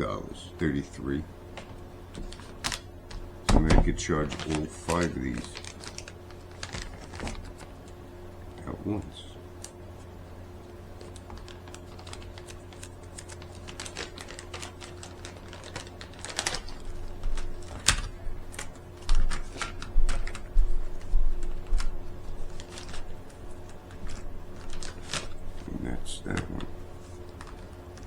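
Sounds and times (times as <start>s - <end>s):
steady low hum: 0.0s - 28.0s
dull thumps: 3.2s - 4.0s.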